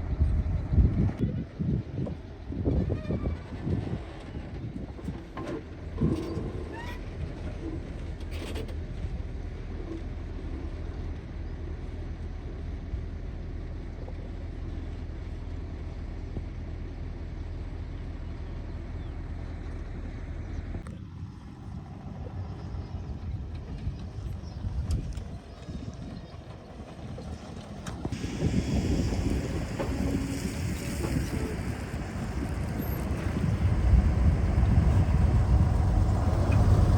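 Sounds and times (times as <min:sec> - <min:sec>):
excavator diesel engine running: 0:23.6 - 0:36.9.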